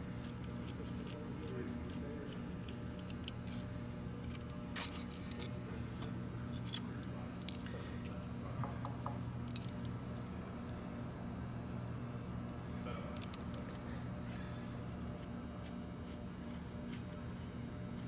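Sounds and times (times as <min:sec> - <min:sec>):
steady low hum: 0:00.0 - 0:18.0
metal parts clicking and tapping: 0:04.2 - 0:05.5, 0:06.6 - 0:07.6, 0:09.5 - 0:09.7.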